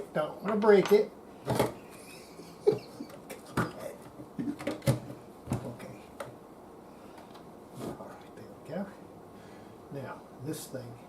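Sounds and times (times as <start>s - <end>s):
light knocks and clicks of parts: 0.4s - 1.8s.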